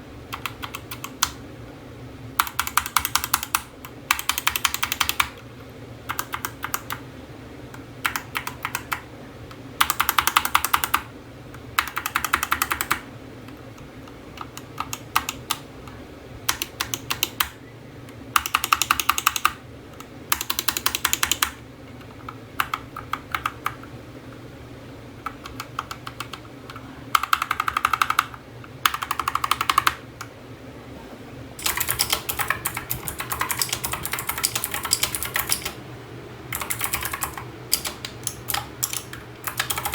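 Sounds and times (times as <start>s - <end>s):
mechanical keyboard typing: 0.3s - 1.4s, 2.4s - 5.4s, 6.1s - 7.0s, 8.0s - 9.1s, 9.8s - 11.1s, 11.8s - 17.6s, 18.4s - 23.9s, 25.2s - 30.0s, 31.6s - 35.8s, 36.5s - 39.9s.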